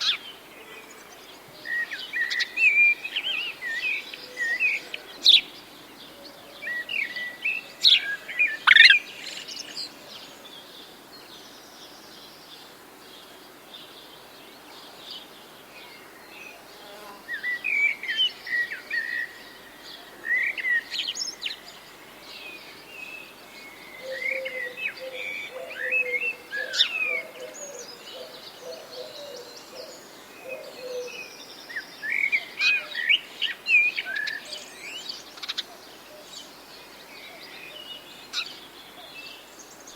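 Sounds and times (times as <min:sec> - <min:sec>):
faint outdoor hiss: 0:00.0 - 0:39.9
songbirds chirping and singing: 0:14.2 - 0:39.9.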